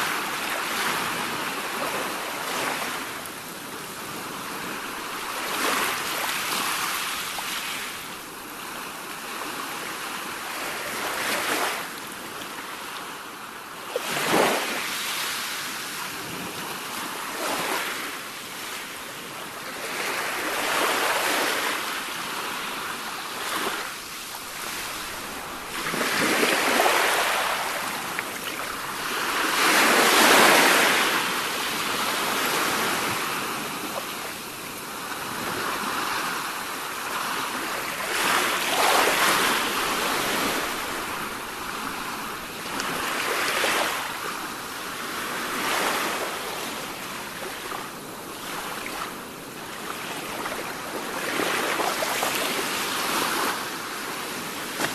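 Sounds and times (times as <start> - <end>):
waves breaking: 20.0 - 49.2, 49.8 - 54.9.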